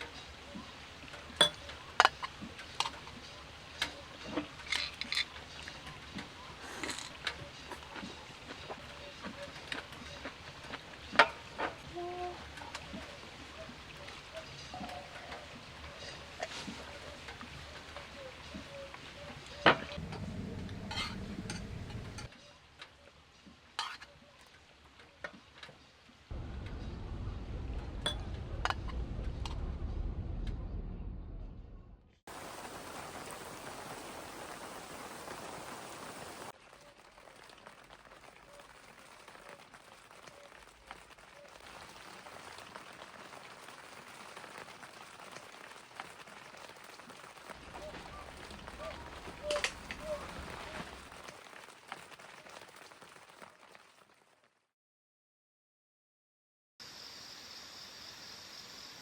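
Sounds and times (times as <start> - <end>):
utensils clinking on dishes: 1.4 - 5.8
low steady rumble: 20.0 - 22.3, 26.3 - 32.2.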